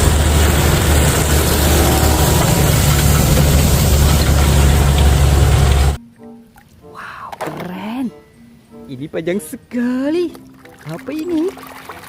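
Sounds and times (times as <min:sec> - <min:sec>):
machine drone with hiss: 0:00.0 - 0:06.0.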